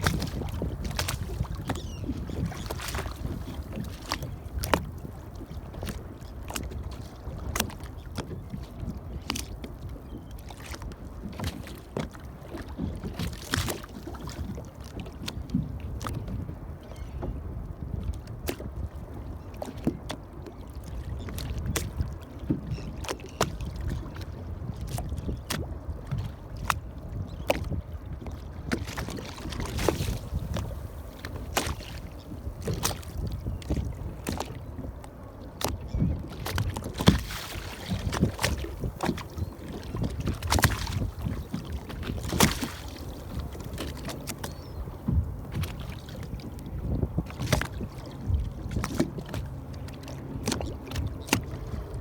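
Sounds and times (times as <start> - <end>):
low rumble of water and wind: 0.0 - 52.0
waves slapping against boat hull: 0.0 - 52.0.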